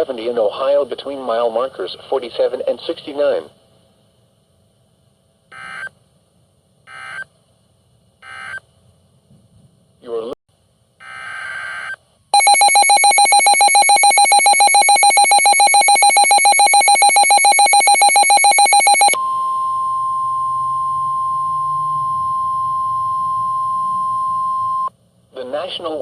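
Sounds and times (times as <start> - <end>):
pulsing two-tone attention signal: 12.4 - 24.9
steady alarm tone: 12.4 - 24.9.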